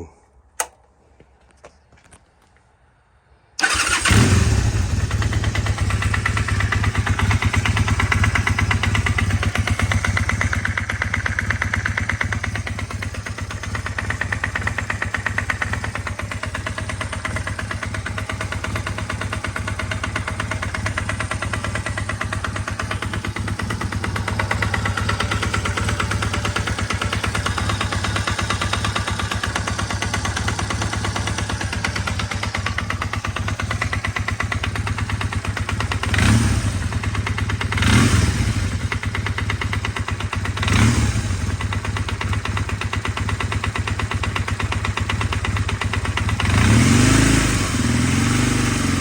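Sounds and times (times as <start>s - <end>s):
motorcycle engine starting and idling: 0.6s - 1.0s, 3.5s - 49.0s
repetitive engine knock: 5.6s - 36.4s, 38.9s - 47.0s.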